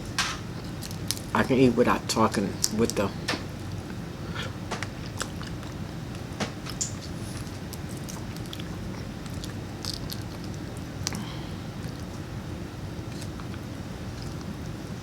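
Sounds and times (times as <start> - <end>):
peanut shells cracking: 0.2 - 1.6, 2.2 - 3.5, 4.7 - 12.2
chewing: 0.6 - 1.3, 2.3 - 15.0.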